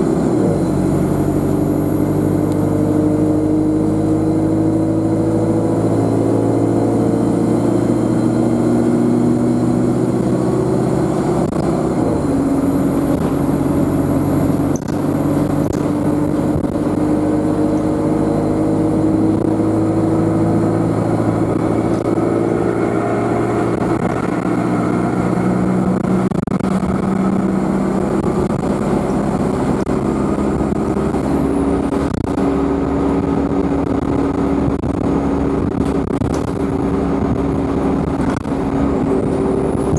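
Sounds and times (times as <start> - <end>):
bus engine running: 0.0 - 39.9
turbocharger whine: 0.0 - 39.9.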